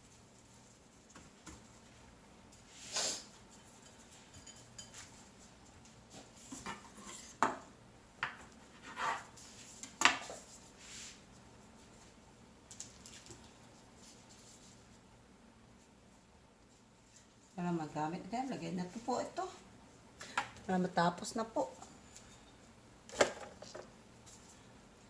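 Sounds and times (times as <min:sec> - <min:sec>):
dishes clinking: 0:03.6 - 0:05.1.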